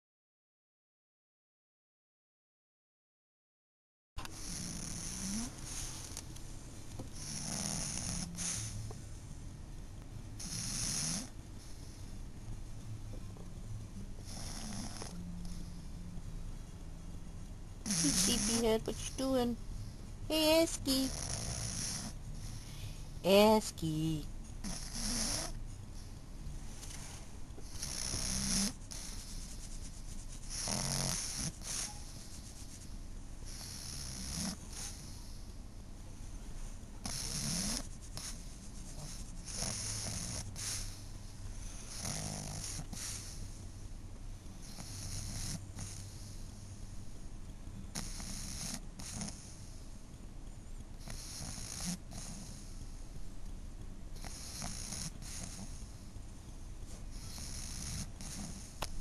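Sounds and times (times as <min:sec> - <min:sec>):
dog snoring: 0:04.2 - 0:06.3, 0:07.0 - 0:09.0, 0:10.4 - 0:12.2, 0:14.0 - 0:16.2, 0:17.8 - 0:26.1, 0:27.6 - 0:35.6, 0:37.0 - 0:43.9, 0:44.5 - 0:47.1, 0:47.9 - 0:50.0, 0:51.0 - 0:53.1, 0:54.1 - 0:56.2, 0:56.9 - 0:59.0.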